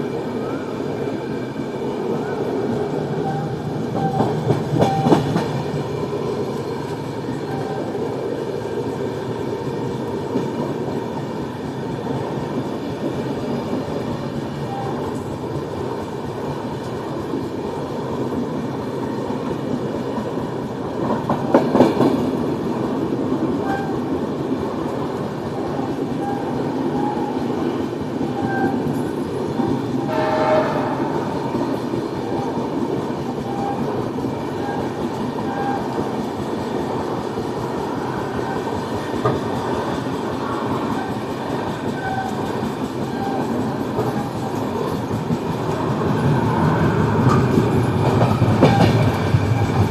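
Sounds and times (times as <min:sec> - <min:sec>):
train wheels rumbling and clacking: 0:00.0 - 0:49.9
train horn blast: 0:30.0 - 0:32.6.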